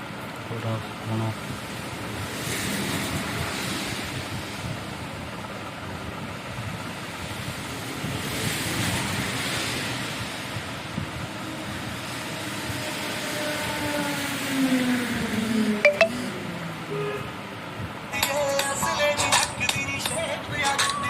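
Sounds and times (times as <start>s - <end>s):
wind on microphone: 2.9s - 12.0s.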